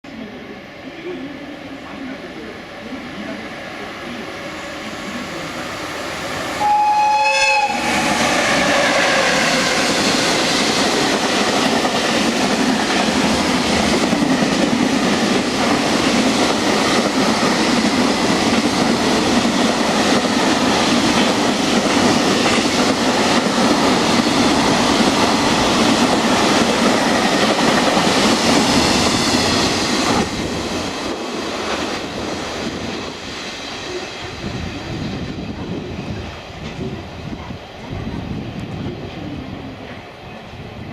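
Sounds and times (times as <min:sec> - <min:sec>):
locomotive horn blast: 0:06.6 - 0:09.9
train wheels clattering over rails: 0:07.8 - 0:35.2.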